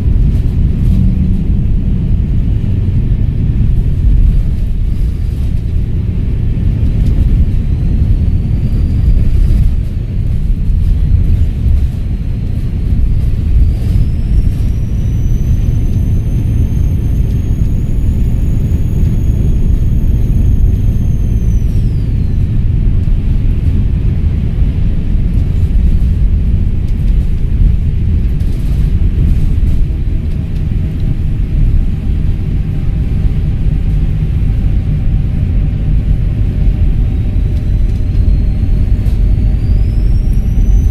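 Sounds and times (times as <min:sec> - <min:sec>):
bus diesel engine rumbling: 0:00.0 - 0:40.9
turbo whistle: 0:13.2 - 0:22.9, 0:37.0 - 0:40.9.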